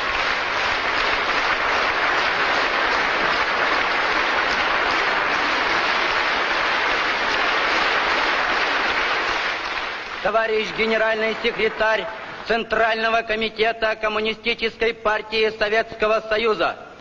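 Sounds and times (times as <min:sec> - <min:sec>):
audience applauding: 0:00.0 - 0:13.0.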